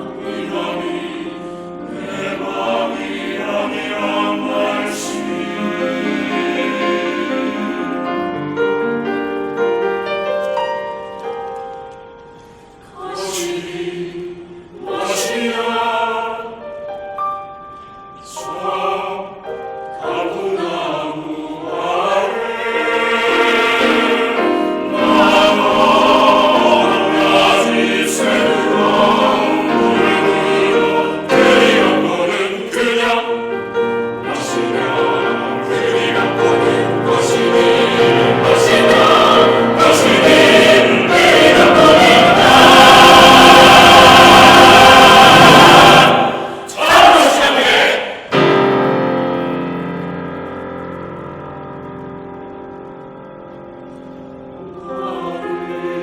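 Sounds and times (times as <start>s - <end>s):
choir singing: 0.0s - 8.9s, 12.8s - 16.8s, 18.2s - 49.0s, 54.4s - 56.0s.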